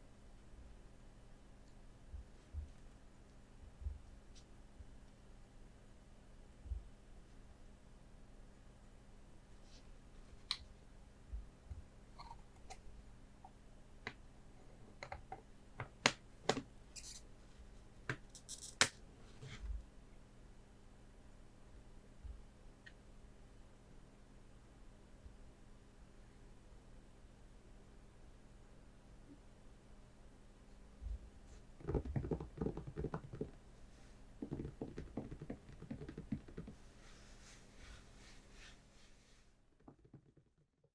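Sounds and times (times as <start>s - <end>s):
fingertips tapping hard object: 31.8s - 33.6s, 34.4s - 36.8s
soft rustle: 36.7s - 39.8s.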